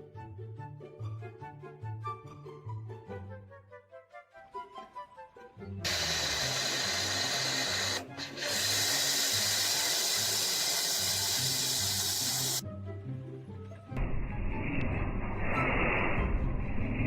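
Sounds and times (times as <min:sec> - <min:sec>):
machine hissing whir: 0:05.9 - 0:12.6.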